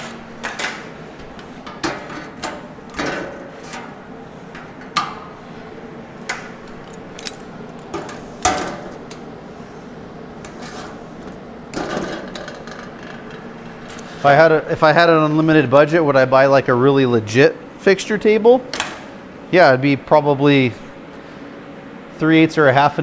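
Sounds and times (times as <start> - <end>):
metal parts clinking and scraping: 6.7 - 8.8.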